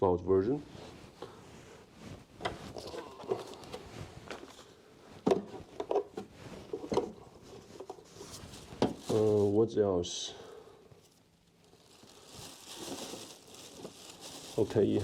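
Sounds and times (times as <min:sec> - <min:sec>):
packaging rustling: 0:02.4 - 0:04.8, 0:06.6 - 0:09.6, 0:11.1 - 0:15.0.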